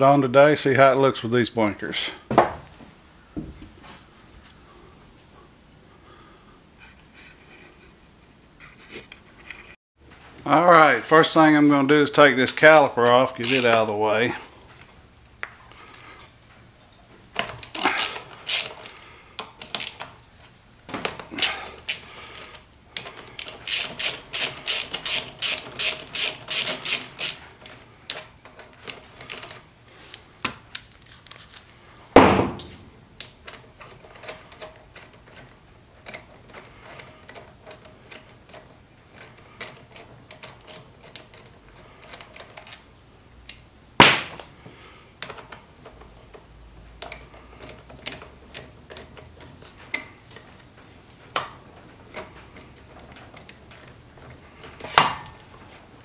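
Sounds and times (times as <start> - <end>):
socket ratchet clicking: 17.7 - 18.9, 23.4 - 27.5
loud metallic knocks: 32.2 - 32.7.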